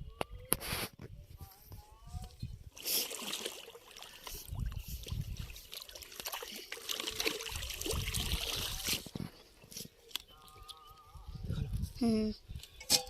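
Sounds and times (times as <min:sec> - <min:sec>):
pond water splashing: 0:02.7 - 0:09.2.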